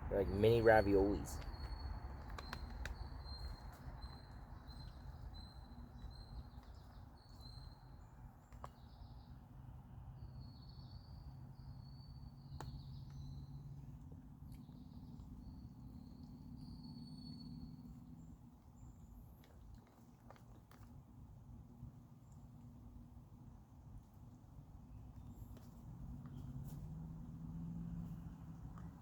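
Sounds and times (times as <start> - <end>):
steady low rumble: 0.0 - 7.3
small birds chirping: 0.0 - 20.9, 24.8 - 27.3.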